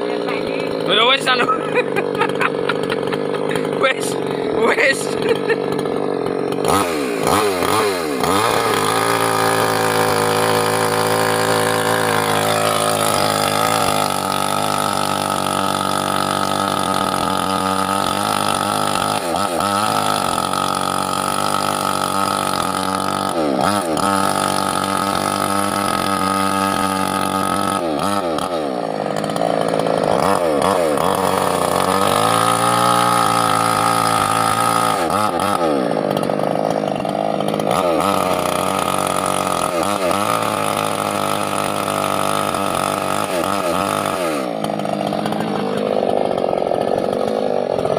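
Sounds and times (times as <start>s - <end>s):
chainsaw running: 0.0s - 47.9s.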